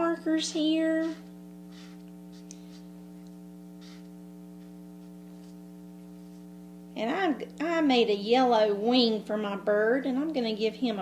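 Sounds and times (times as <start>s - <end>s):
steady low hum: 0.0s - 11.0s
marker scratching on paper: 0.5s - 3.0s, 3.8s - 5.6s.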